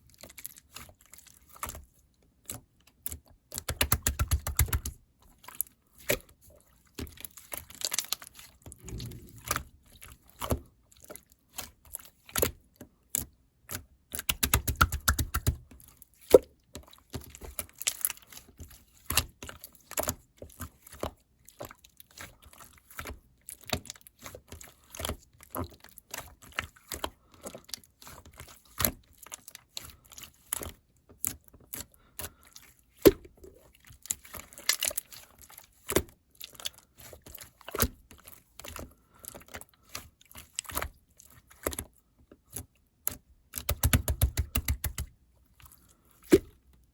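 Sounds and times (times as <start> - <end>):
slime squished by hand: 7.8 - 9.6, 43.5 - 46.7.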